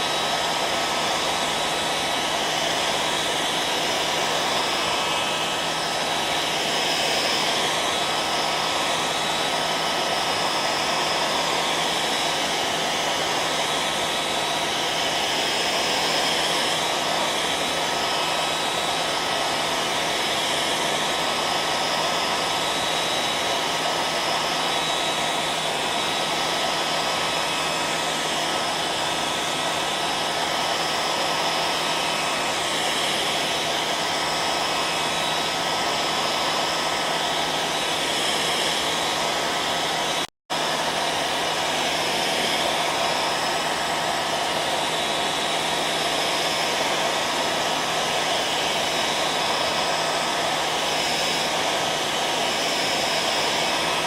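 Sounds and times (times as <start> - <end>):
hair dryer running: 0.0 - 54.0.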